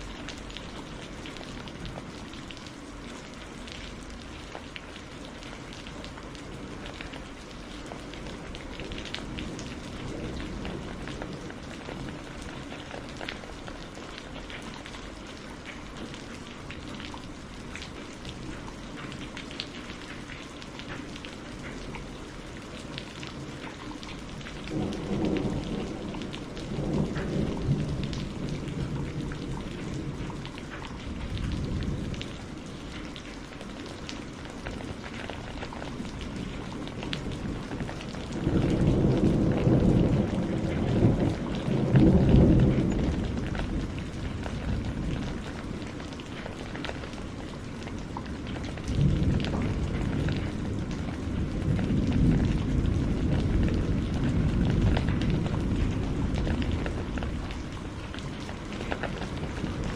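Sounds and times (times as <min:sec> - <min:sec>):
steady rain falling: 0:00.0 - 0:59.9
thunder rumbling: 0:08.0 - 0:14.5, 0:22.8 - 0:33.1, 0:34.2 - 0:59.9.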